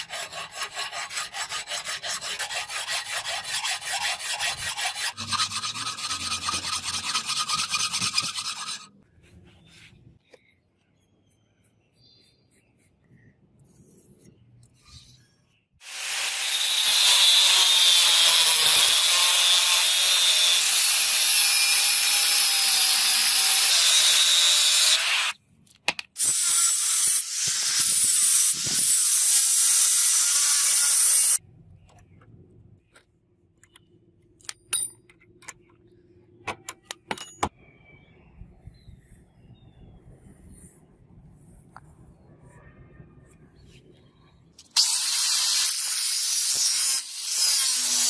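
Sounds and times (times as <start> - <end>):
power tool grinding metal: 15.8 - 25.3, 26.2 - 31.4, 44.8 - 48.0.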